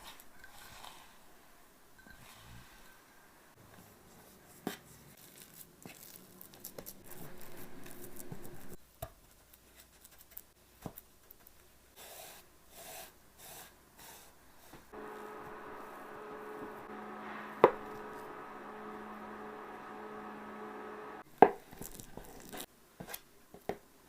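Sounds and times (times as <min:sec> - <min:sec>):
steady hum with held tones: 0:15.0 - 0:21.2.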